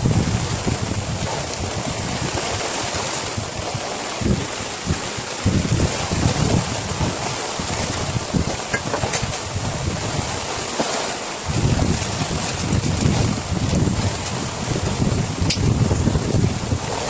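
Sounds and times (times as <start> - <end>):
heavy rain: 0.0 - 17.0
wind buffeting microphone: 0.0 - 17.0.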